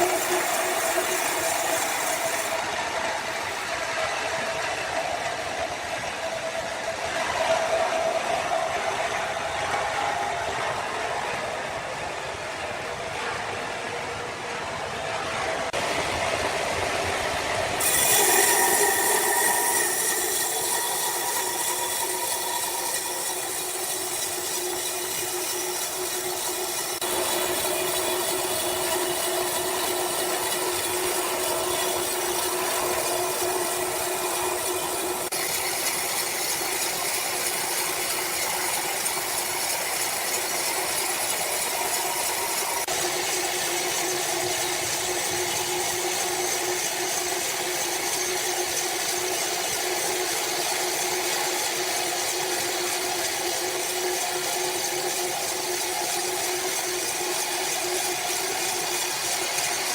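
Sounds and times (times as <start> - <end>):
sawmill saw cutting log: 0.0 - 4.8, 17.0 - 59.9.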